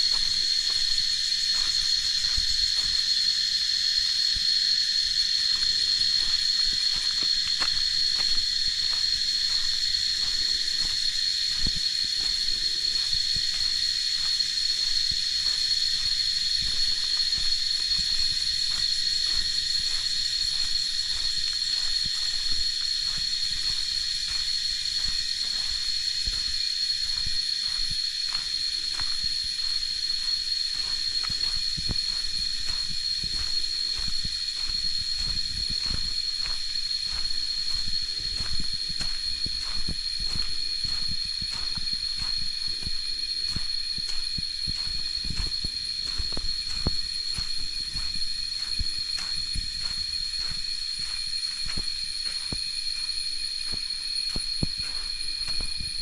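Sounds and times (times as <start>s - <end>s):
high-pitched insect drone: 0.0s - 56.0s
footsteps crunching on leaf litter: 5.5s - 26.6s.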